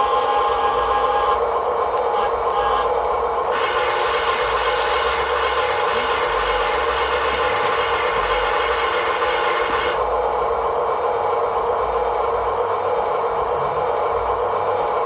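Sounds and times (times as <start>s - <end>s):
small electric motor whining: 3.5s - 10.0s.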